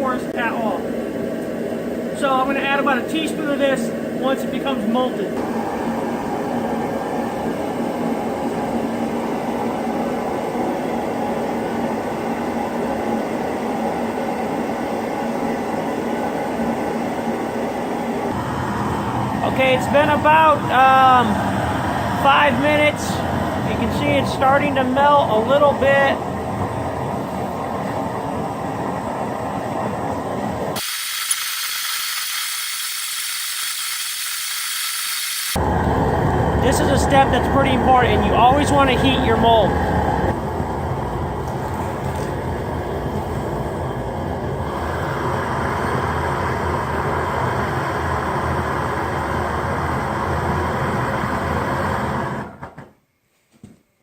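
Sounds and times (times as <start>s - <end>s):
furnace roaring and hissing: 0.0s - 53.0s.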